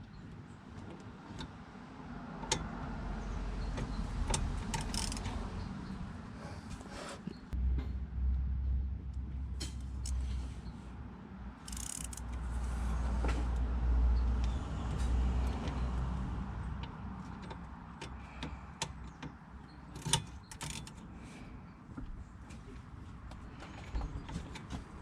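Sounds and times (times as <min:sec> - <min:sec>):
low rumble: 0:07.6 - 0:10.5.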